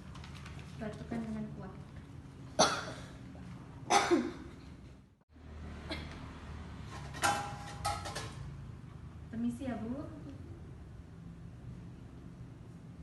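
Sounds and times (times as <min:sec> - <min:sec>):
woman coughing hard: 0:02.6 - 0:03.1, 0:03.9 - 0:04.5.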